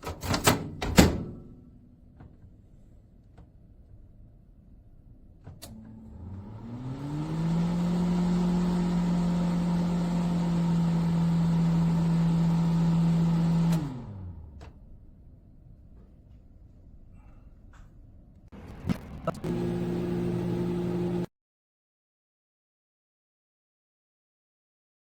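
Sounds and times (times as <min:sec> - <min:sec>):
microwave oven humming: 0:05.7 - 0:14.7, 0:18.6 - 0:21.3.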